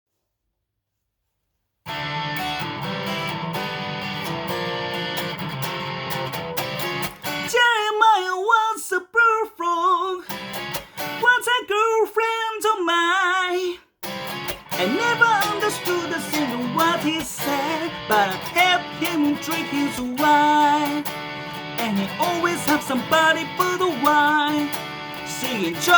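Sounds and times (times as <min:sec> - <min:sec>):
guitar strumming: 0:01.9 - 0:08.0, 0:10.2 - 0:11.4, 0:14.0 - 0:25.9
person singing: 0:07.3 - 0:10.4, 0:11.0 - 0:13.9, 0:14.8 - 0:25.9.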